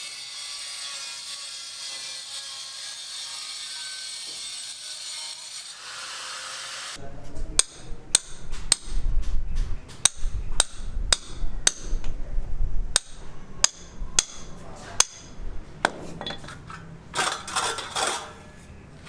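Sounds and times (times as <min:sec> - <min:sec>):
clattering: 0:15.8 - 0:18.4.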